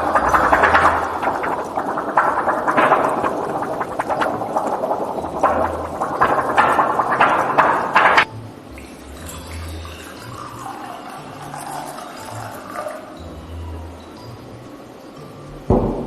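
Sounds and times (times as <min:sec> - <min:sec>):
rushing splashing water: 0:00.0 - 0:08.3.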